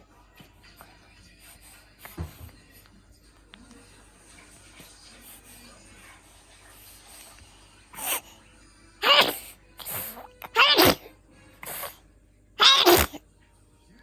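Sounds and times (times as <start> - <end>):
baby sneezing: 9.0 - 12.0, 12.6 - 13.2.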